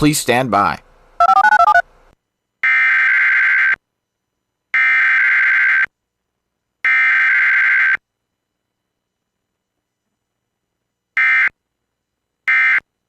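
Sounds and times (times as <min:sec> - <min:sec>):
screechy digital bursts: 0:01.2 - 0:01.8.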